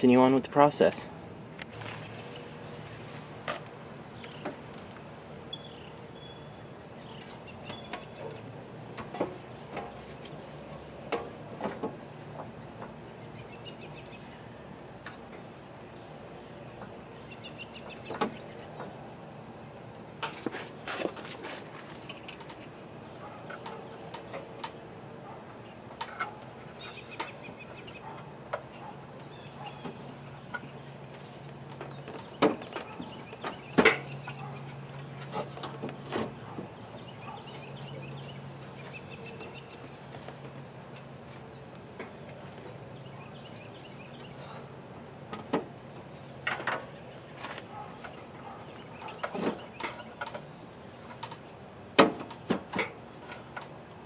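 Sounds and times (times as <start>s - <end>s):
metal clunks and knocks: 7.6s - 10.0s, 11.0s - 13.0s, 31.7s - 36.8s, 45.3s - 45.7s, 46.4s - 47.0s, 49.0s - 50.5s, 52.0s - 53.8s.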